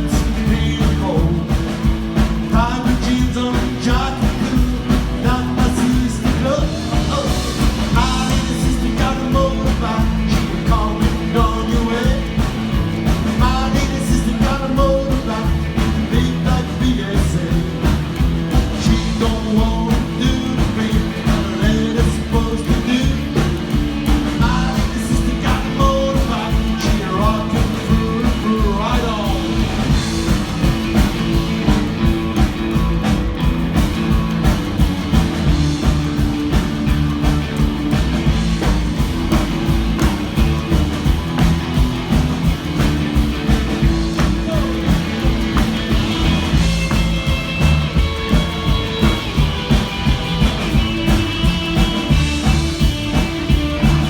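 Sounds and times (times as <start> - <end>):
person singing: 0.0 - 1.8, 2.5 - 12.5, 13.3 - 18.0, 18.7 - 30.0, 43.8 - 49.4
guitar: 0.0 - 54.0
steady drum beat: 0.0 - 54.0.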